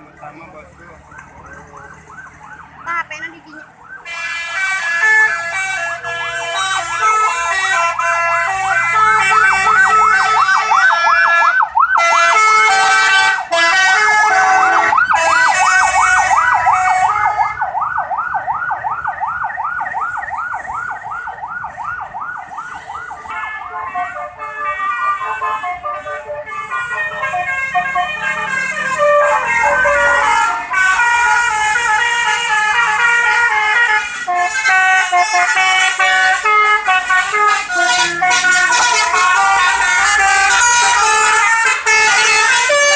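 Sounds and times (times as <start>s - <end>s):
bus musical horn melody: 4.0s - 17.6s, 23.2s - 42.9s.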